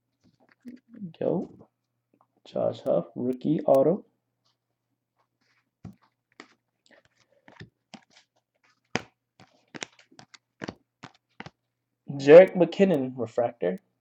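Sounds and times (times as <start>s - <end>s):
faint electrical hum: 0.0s - 8.0s
trading cards flipped by hand: 5.2s - 11.7s.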